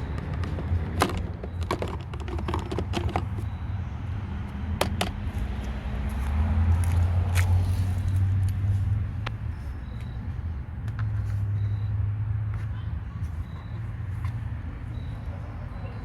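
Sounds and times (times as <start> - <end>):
sharp clicks and knocks: 0.0 - 3.5, 4.8 - 5.2.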